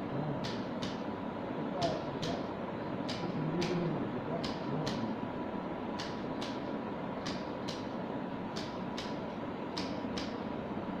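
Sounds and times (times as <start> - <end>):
faint steady hum: 0.0 - 11.0.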